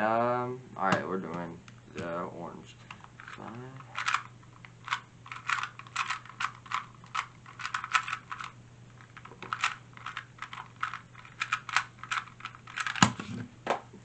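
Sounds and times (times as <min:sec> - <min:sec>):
plastic speed cube clicking: 0:04.0 - 0:08.5, 0:09.2 - 0:13.1.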